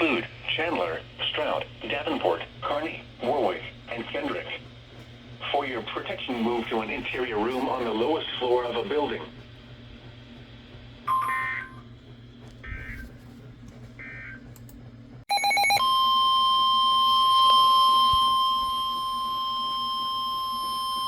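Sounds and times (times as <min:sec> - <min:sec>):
steady warning alarm tone: 0:14.0 - 0:14.5, 0:15.3 - 0:21.0.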